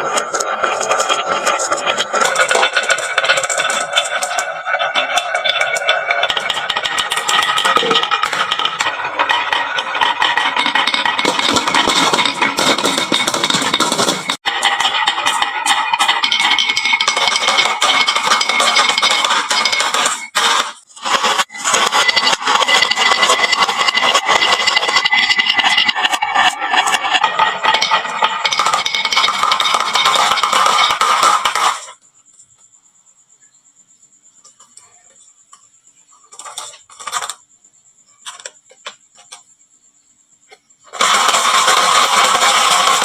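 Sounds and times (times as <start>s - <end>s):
marbles rattling down wooden run: 0.0s - 32.0s, 41.0s - 43.0s.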